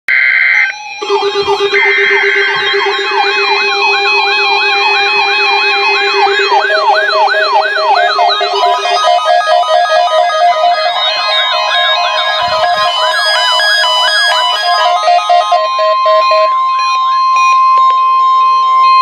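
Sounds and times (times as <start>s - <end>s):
electronic siren wail: 0.1s - 19.0s
steady electronic beeps: 0.1s - 19.0s
fast-pulsing low tone: 0.6s - 15.8s.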